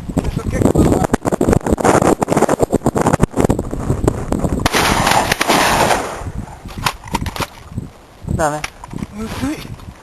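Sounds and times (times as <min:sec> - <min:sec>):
wind buffeting microphone: 0:00.0 - 0:10.0
gunshot: 0:04.6 - 0:06.2.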